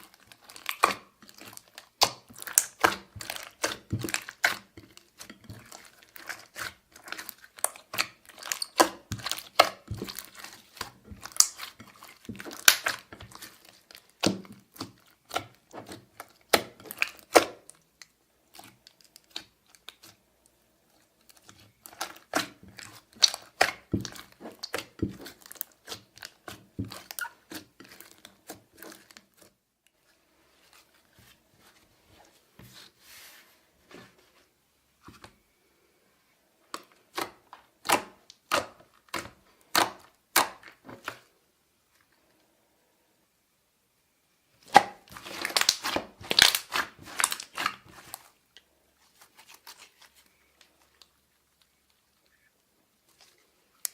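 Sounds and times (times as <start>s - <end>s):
slime crackling and popping: 0.0s - 20.2s, 21.3s - 29.3s, 44.6s - 48.2s.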